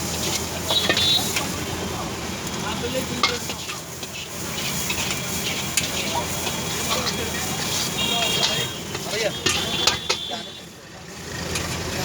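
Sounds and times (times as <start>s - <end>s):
metal utensil scraping a pan: 0.0s - 1.6s, 2.7s - 10.5s
food sizzling in hot oil: 0.0s - 10.6s.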